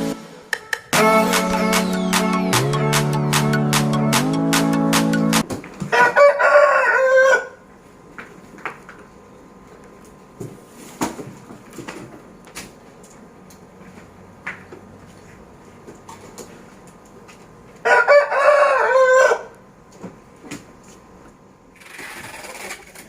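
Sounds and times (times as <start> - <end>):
rooster crowing: 5.8 - 7.7, 17.8 - 19.6.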